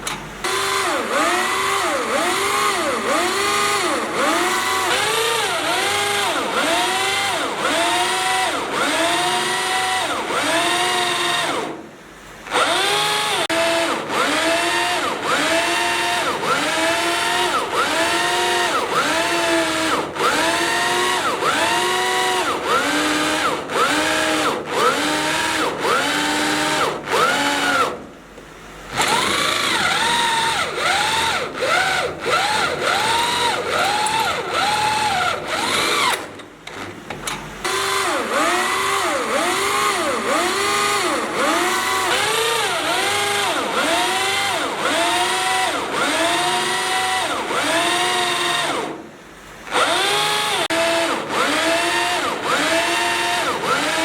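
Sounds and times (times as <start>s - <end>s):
power drill boring into steel: 12.5s - 28.0s, 28.9s - 36.3s, 37.6s - 49.0s, 49.7s - 54.0s.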